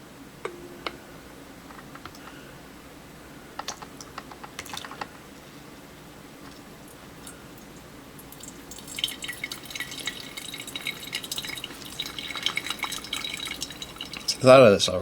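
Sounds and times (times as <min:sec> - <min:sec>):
low steady hum: 0:00.0 - 0:15.0
plastic parts clicking: 0:03.6 - 0:05.1.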